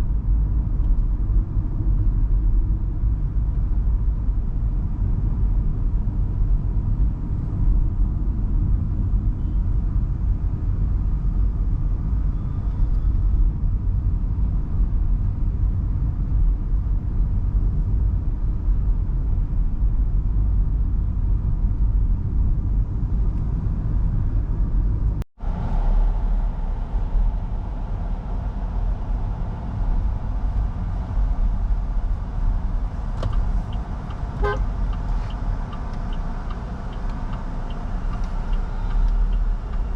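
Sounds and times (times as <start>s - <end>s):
car engine and road noise: 0.0s - 39.9s
light regular ticking: 32.9s - 39.9s.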